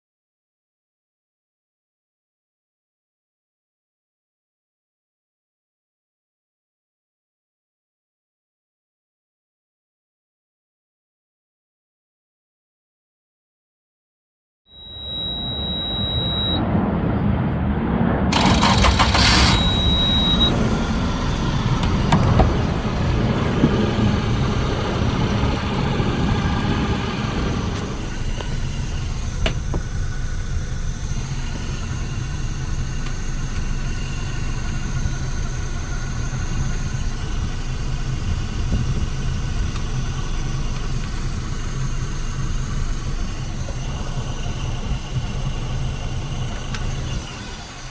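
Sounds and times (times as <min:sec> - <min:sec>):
high beep: 0:14.7 - 0:16.7, 0:19.1 - 0:20.7
outboard engine running: 0:18.3 - 0:47.9.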